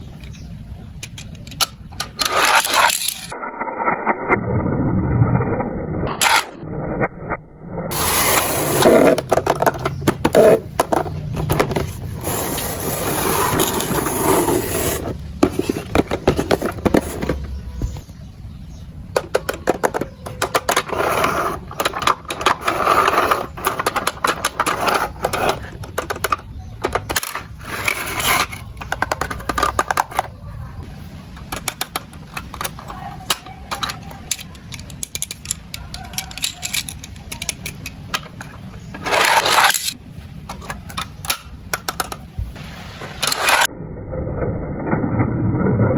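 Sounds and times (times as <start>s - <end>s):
packaging scraping and rustling: 7.9s - 18.0s, 27.0s - 30.1s, 38.8s - 40.0s.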